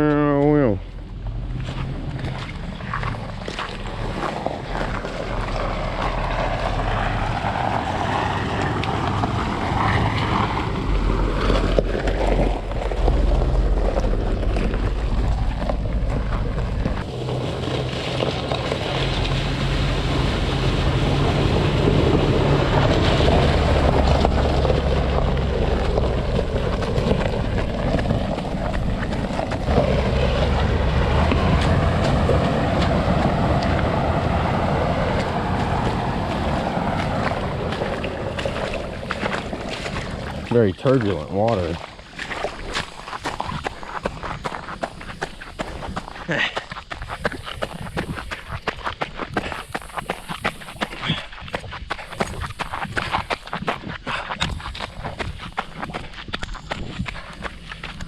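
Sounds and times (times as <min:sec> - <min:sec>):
car engine running: 0:00.0 - 0:42.2, 0:54.4 - 0:58.0
rushing splashing water: 0:01.5 - 0:58.0.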